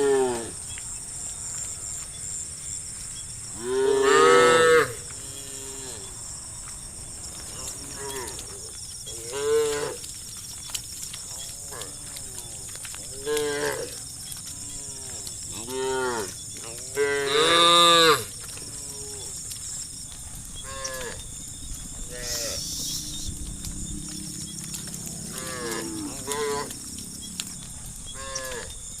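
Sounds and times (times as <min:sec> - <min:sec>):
cattle mooing: 0:03.5 - 0:06.2, 0:13.1 - 0:19.3, 0:20.6 - 0:21.2, 0:22.0 - 0:23.4, 0:24.0 - 0:27.0, 0:28.1 - 0:28.7.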